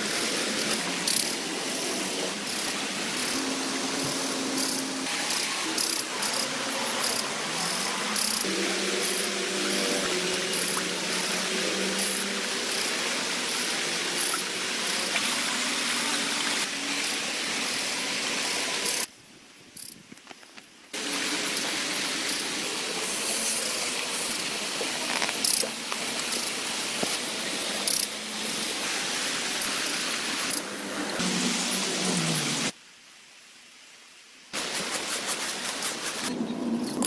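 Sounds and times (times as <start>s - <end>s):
steady rain: 0.0s - 19.1s, 20.9s - 37.0s.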